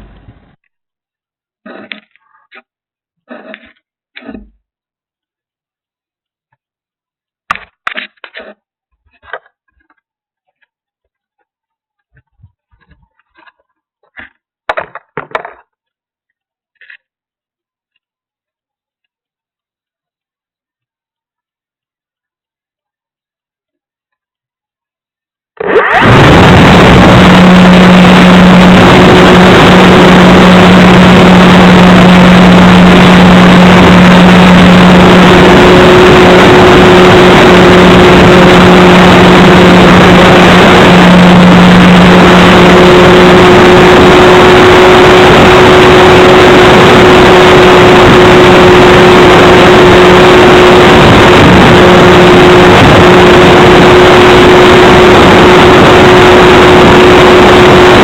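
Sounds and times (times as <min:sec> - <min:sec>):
electric motor and propeller drone: 0:25.6 - 0:58.0.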